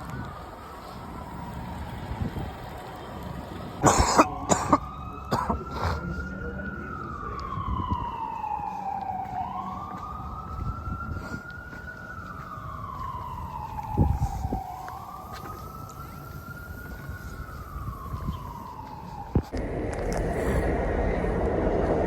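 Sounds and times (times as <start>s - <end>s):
siren wailing: 0.0s - 22.0s
loud short siren bursts: 3.8s - 19.6s.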